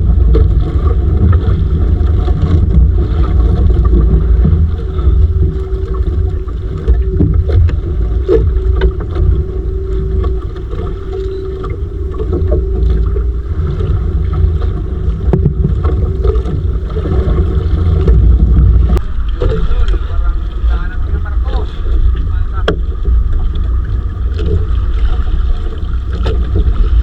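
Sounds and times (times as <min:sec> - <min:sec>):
boat engine low rumble: 0:00.0 - 0:27.0
faint steady hum: 0:00.0 - 0:27.0
wind buffeting microphone: 0:00.0 - 0:27.0.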